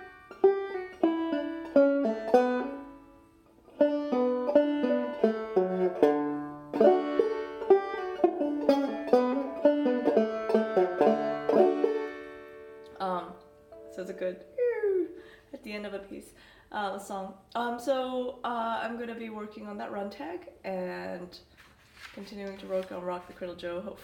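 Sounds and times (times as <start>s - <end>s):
banjo plucked notes: 0.0s - 14.6s.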